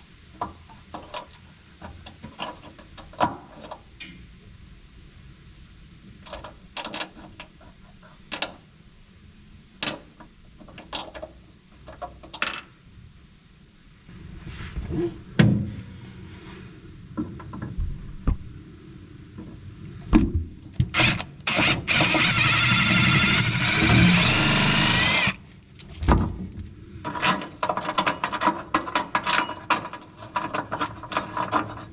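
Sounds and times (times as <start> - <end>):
hand tools clicking and knocking: 20.8 - 25.4.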